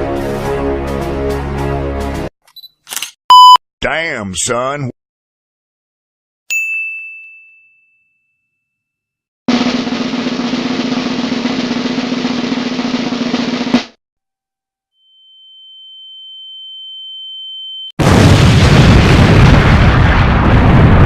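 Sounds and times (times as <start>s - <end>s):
sudden loud blast of noise: 18.0s - 21.0s.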